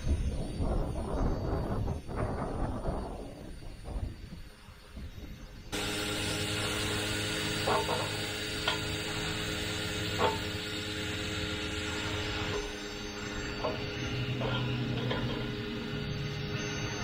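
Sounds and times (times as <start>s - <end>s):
pressure washer running: 5.7s - 17.0s.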